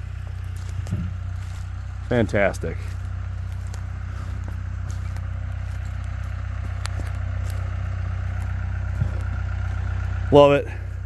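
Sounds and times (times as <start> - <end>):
diesel engine running: 0.0 - 11.0
faint clicks and crackles: 0.2 - 10.1.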